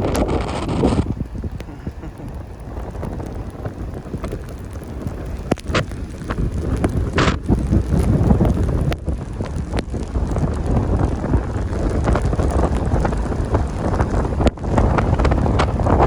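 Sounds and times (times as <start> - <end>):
strong wind on microphone: 0.0 - 16.0.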